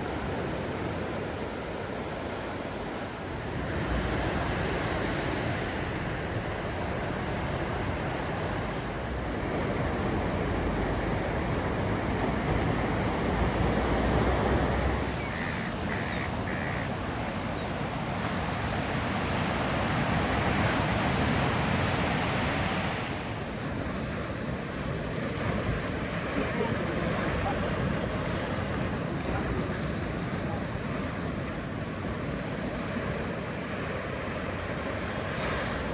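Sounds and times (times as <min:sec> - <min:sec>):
ocean surf breaking: 0:00.0 - 0:35.9
bird calling: 0:15.1 - 0:17.8.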